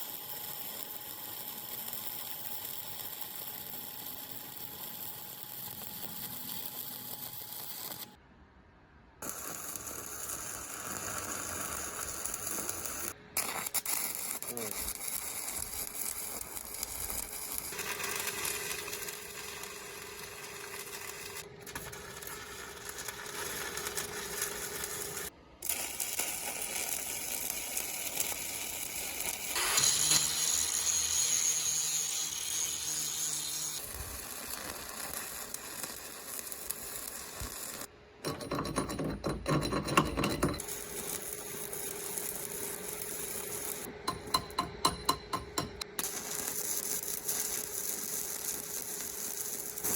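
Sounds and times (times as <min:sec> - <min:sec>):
hiss: 0:09.3 - 0:21.4, 0:23.4 - 0:37.9
hum with held tone: 0:36.6 - 0:49.9.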